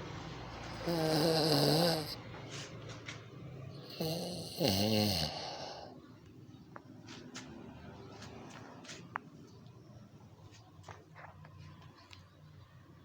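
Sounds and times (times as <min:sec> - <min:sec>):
buzzing snore: 0:00.7 - 0:02.2, 0:03.8 - 0:05.9.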